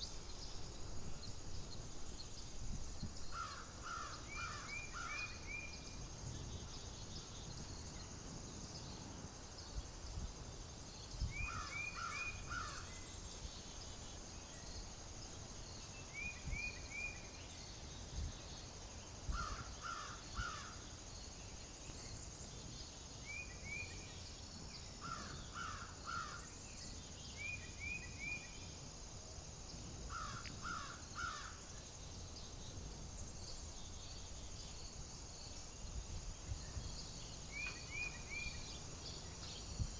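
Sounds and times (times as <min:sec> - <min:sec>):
low wind rumble: 0:00.0 - 0:21.3, 0:29.5 - 0:39.9
steady high hiss: 0:00.0 - 0:39.9.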